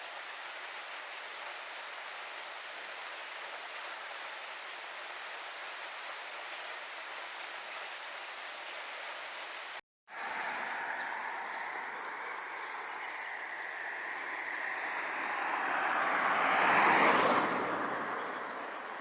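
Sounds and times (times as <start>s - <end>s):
road vehicle passing by: 10.1s - 19.0s.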